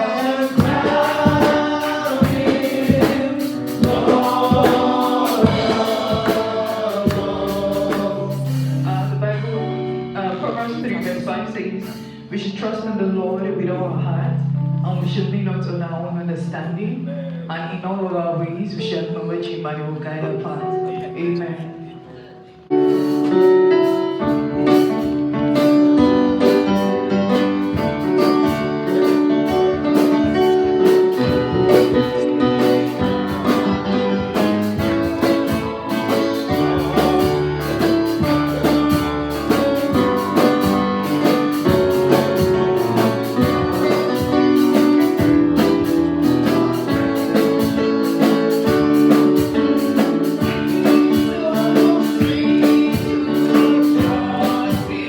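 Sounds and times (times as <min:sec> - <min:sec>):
steady beat: 0:00.0 - 0:11.5, 0:22.8 - 0:55.0
keyboard worship music: 0:00.0 - 0:55.0.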